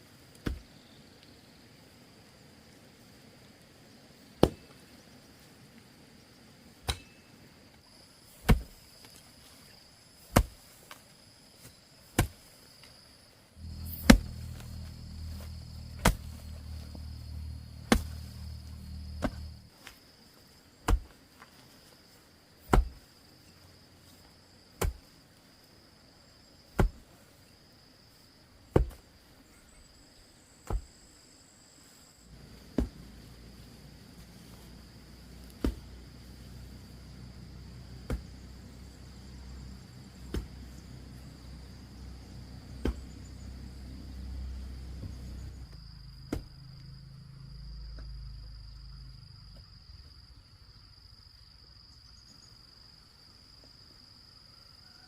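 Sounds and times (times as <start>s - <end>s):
high insect drone: 0.0s - 55.0s
blade chopping sugarcane: 4.4s - 4.7s, 6.9s - 7.2s, 8.4s - 8.8s, 10.3s - 11.0s, 12.1s - 12.4s, 13.6s - 20.0s, 20.8s - 21.2s, 22.7s - 23.0s, 24.8s - 25.1s, 26.8s - 27.0s, 28.7s - 29.1s, 30.6s - 30.9s, 32.7s - 33.1s, 35.5s - 35.9s, 38.0s - 38.4s, 40.2s - 40.6s, 42.8s - 43.1s, 46.3s - 46.5s
low hum: 13.6s - 19.7s.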